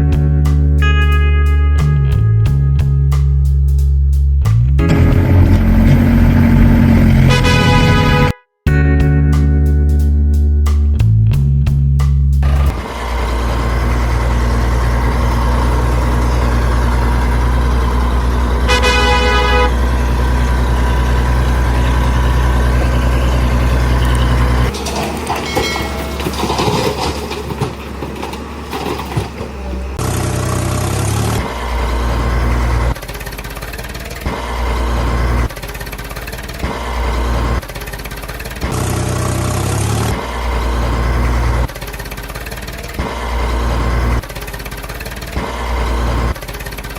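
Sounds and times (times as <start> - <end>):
truck engine rumble: 0.0 - 8.3, 9.0 - 46.9
truck horn toot: 4.9 - 8.4, 16.6 - 26.4.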